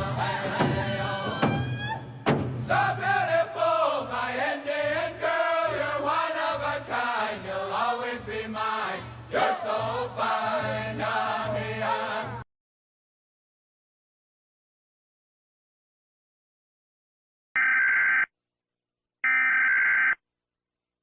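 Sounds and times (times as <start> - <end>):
group chanting in high voices: 0.0 - 1.8, 2.6 - 12.4
steady drumbeat: 0.0 - 3.3.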